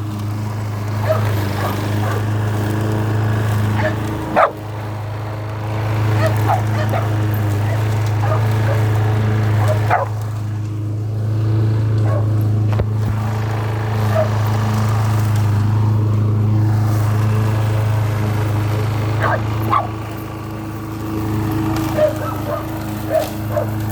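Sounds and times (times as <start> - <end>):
lawnmower engine running: 0.0 - 23.9
dog barking and yipping: 1.0 - 2.3, 3.8 - 4.6, 6.1 - 10.2, 12.0 - 12.4, 14.1 - 14.4, 19.2 - 20.0, 21.8 - 23.9.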